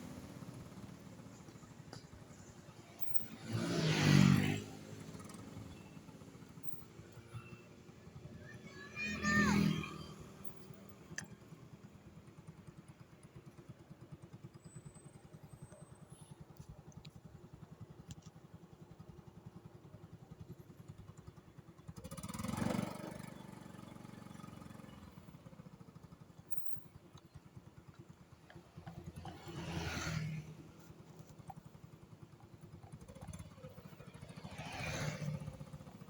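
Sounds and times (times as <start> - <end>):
passing vehicle: 0.0 - 11.2, 27.8 - 36.0
vehicle engine running: 10.4 - 36.0.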